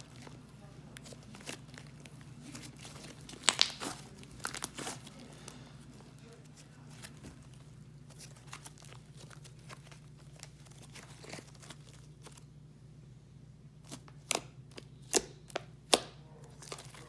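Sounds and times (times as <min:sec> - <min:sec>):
slime crackling: 0:00.0 - 0:12.5
sharp slime pops: 0:03.3 - 0:04.9.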